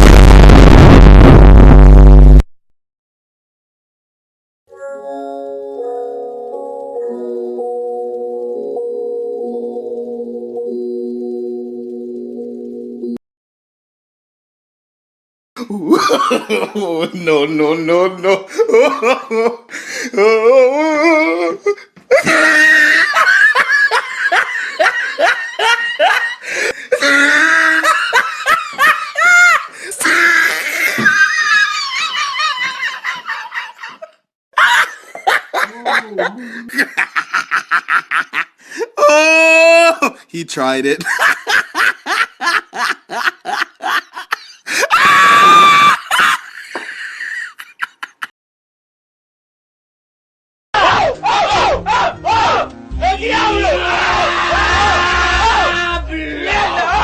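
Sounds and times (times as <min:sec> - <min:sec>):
person laughing hard: 0:15.6 - 0:17.4, 0:18.3 - 0:40.2, 0:41.0 - 0:48.3
wavering voice: 0:20.2 - 0:22.8
loud high-pitched scream: 0:44.9 - 0:46.1.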